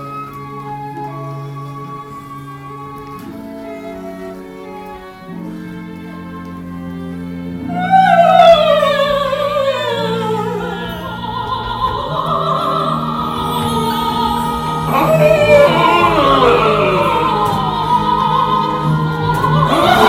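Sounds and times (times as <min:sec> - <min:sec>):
orchestra playing: 0:00.0 - 0:20.0
operatic singing voice: 0:07.6 - 0:20.0.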